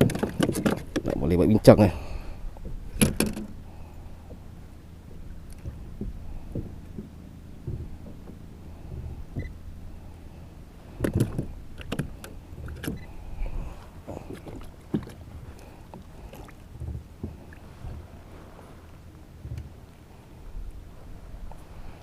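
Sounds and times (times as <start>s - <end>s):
steady low rumble: 0.0s - 22.0s
knocks on a kayak: 2.9s - 3.6s, 5.7s - 9.5s.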